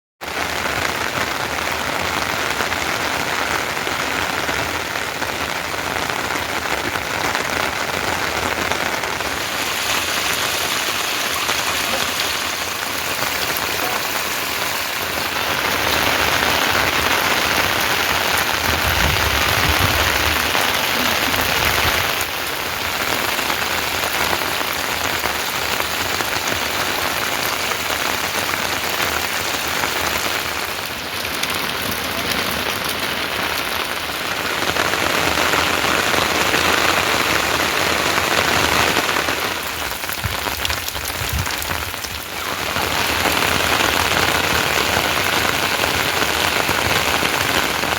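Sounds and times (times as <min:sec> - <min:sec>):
heavy rain falling: 0:00.2 - 0:47.9.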